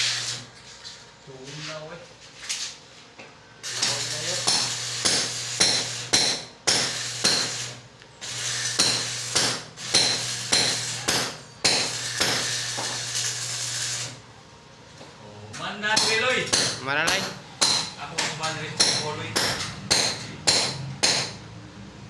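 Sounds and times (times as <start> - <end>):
welding arc crackling: 0.0 - 0.5, 3.6 - 14.3, 15.9 - 21.4
electrical buzz: 0.0 - 0.6, 3.6 - 14.4.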